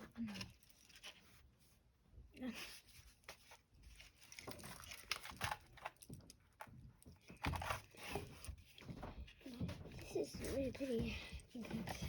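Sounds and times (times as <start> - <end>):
packaging crackling and rustling: 3.3 - 8.8.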